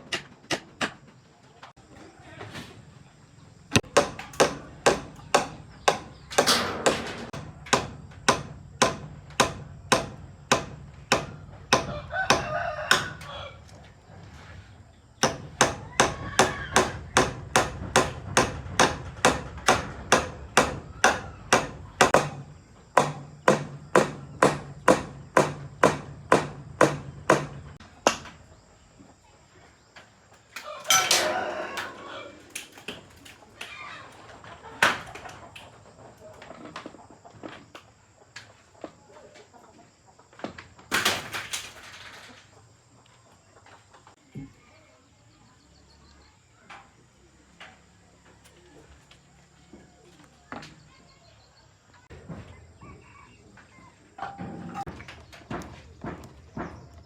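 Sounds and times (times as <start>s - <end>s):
rooster crowing: 11.8s - 13.8s, 30.6s - 32.8s, 52.6s - 54.1s
hammer blows: 15.2s - 28.3s.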